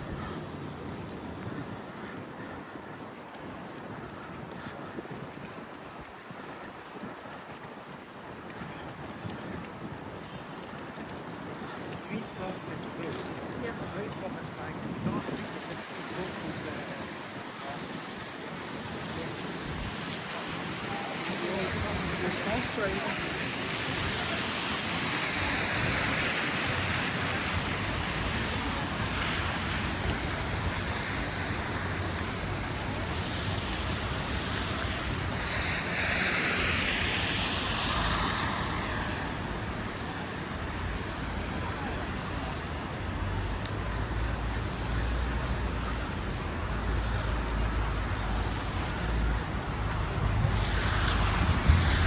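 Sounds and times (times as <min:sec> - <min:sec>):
tyre hiss on slushy road: 0:04.3 - 0:52.0
vehicles passing: 0:05.7 - 0:52.0.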